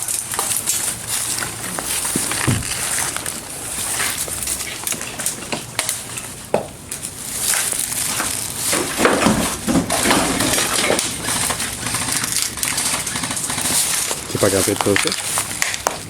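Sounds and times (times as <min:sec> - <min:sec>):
rustling and crunching: 0:00.0 - 0:16.0
sharp clicks: 0:11.0 - 0:15.1.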